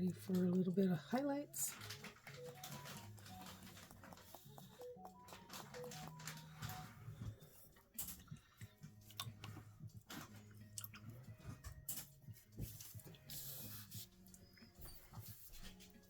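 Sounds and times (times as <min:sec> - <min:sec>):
paintbrush clicks and taps: 0:02.8 - 0:06.5.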